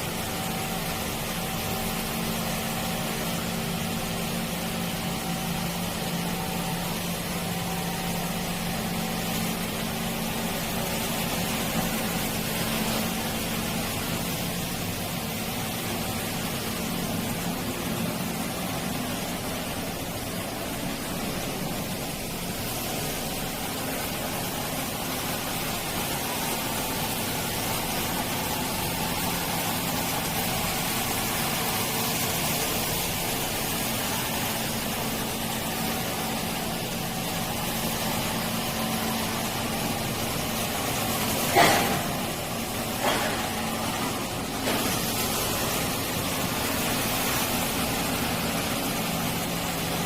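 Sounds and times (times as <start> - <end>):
floor scrubber hiss and hum: 0.0 - 50.0.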